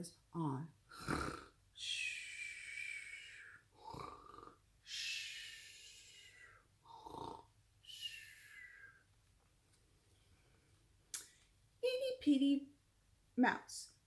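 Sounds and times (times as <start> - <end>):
person imitating bear snoring: 0.9 - 8.9.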